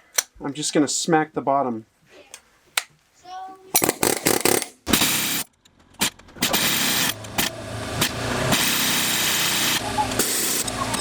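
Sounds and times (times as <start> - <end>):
motor running: 6.4 - 11.0.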